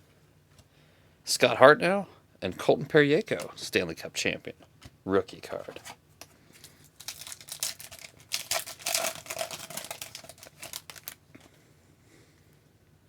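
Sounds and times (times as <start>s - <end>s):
foil wrapper crinkling and tearing: 6.6s - 11.5s.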